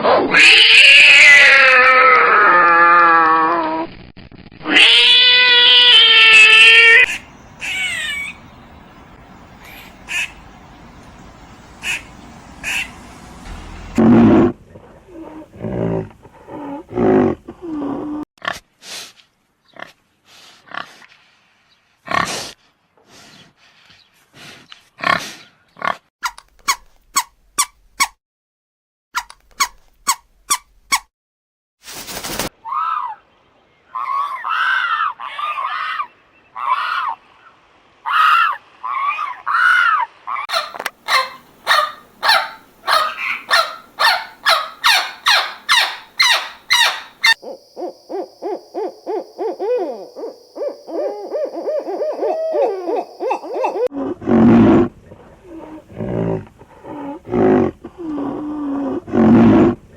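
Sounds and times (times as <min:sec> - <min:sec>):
rising and falling animal calls: 0:00.1 - 0:03.8, 0:04.6 - 0:14.5, 0:32.6 - 0:33.3, 0:33.9 - 0:54.0
low warbling calls: 0:07.0 - 0:14.0, 0:38.1 - 0:53.9
rapid trains of short calls: 0:07.0 - 0:14.0, 0:36.6 - 0:53.9
low heavy animal calls: 0:38.1 - 0:59.6.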